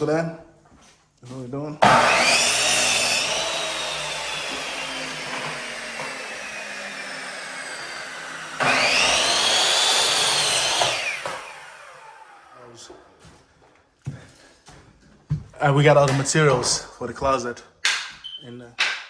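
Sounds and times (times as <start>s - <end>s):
power tool motor whining: 1.8s - 12.7s.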